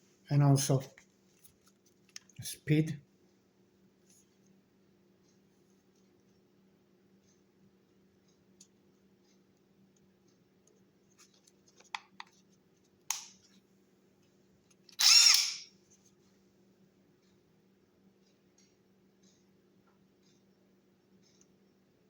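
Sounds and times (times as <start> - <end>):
impact wrench motor whirring: 15.0 - 15.7.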